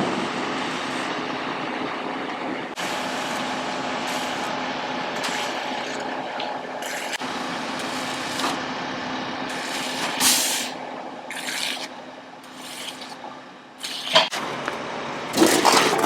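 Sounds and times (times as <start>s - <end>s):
concrete truck engine hum: 0.0s - 16.0s
short hisses: 10.2s - 10.8s.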